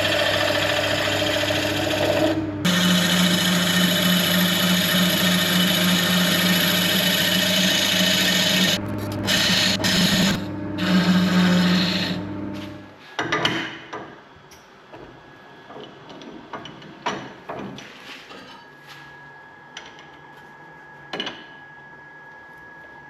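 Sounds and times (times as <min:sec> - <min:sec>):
lathe cutting rasp: 0:00.0 - 0:12.6.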